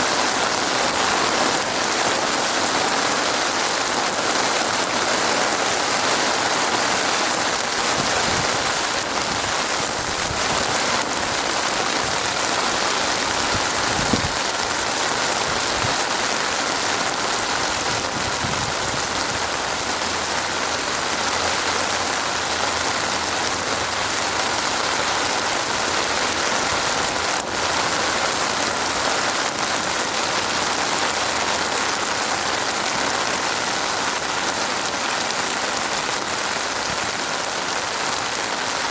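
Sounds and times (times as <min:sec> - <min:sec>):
heavy rain: 0:00.0 - 0:38.9.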